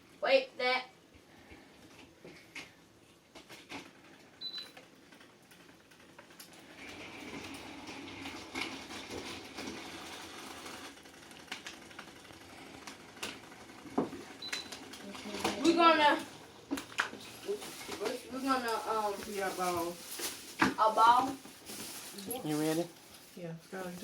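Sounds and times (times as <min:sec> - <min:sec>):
toy train motors whirring: 0:06.8 - 0:13.9.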